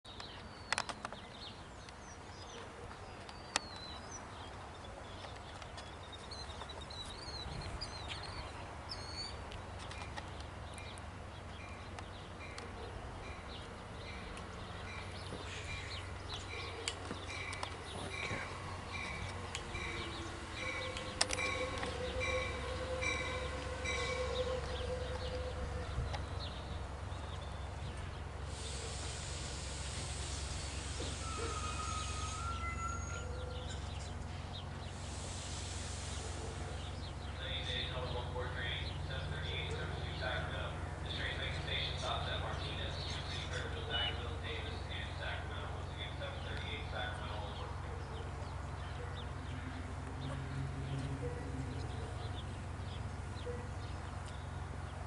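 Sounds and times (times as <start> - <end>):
birds chirping: 0.1 - 55.0
approaching train rumble: 1.2 - 55.0
bell ringing: 31.2 - 33.5.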